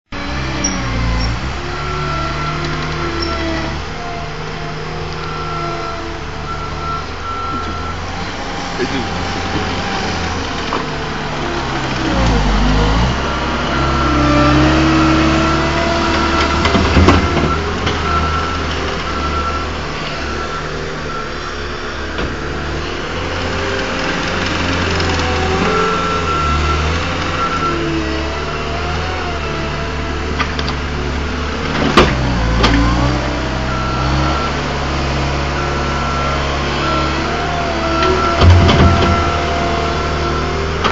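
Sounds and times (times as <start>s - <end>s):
diesel engine working under load: 0.1s - 40.9s
engine whine: 0.1s - 40.9s
reversing alarm beeping: 4.7s - 10.4s, 11.1s - 22.2s, 25.1s - 29.4s, 32.3s - 40.8s
sharp heavy knocks: 38.3s - 39.6s.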